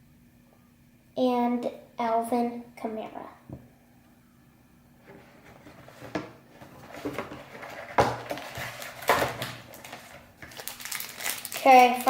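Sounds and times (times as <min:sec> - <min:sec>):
packaging rustling and crinkling: 0:05.2 - 0:12.0.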